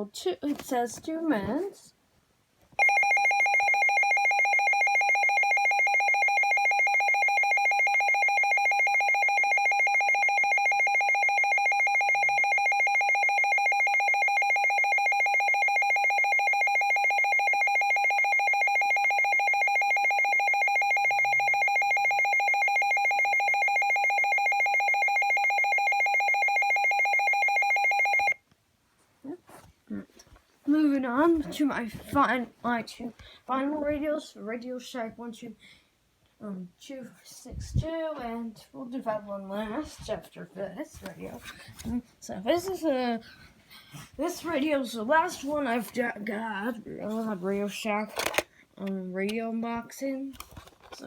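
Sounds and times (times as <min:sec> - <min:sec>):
pulsing electronic alarm tone: 0:02.8 - 0:28.4.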